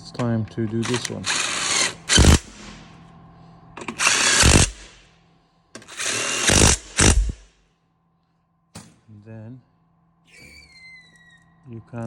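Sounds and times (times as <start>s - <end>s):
power tool tightening bolts: 0.8s - 2.8s, 3.8s - 5.0s, 5.8s - 7.5s.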